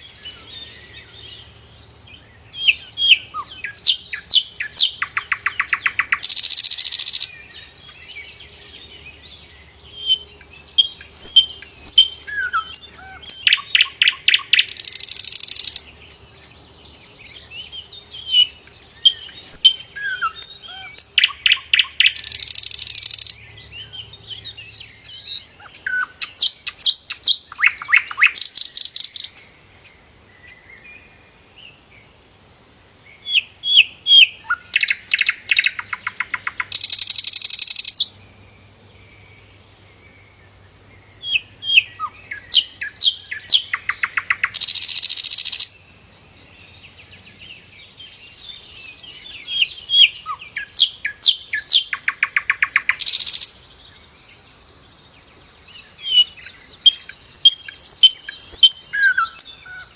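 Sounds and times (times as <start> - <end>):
bird singing rapid trills: 0.0 - 29.5, 33.2 - 40.4, 41.0 - 45.9, 46.7 - 59.9
bird whistling and chirping: 24.8 - 29.3, 56.0 - 59.9.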